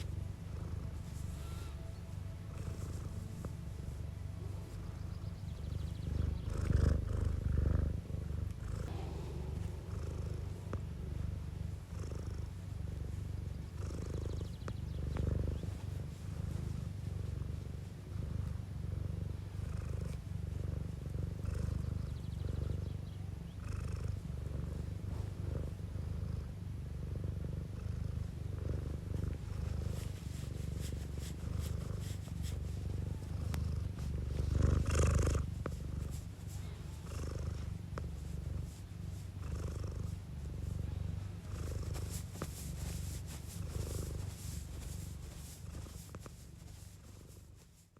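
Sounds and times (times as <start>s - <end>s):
cat purring: 0.0s - 47.9s.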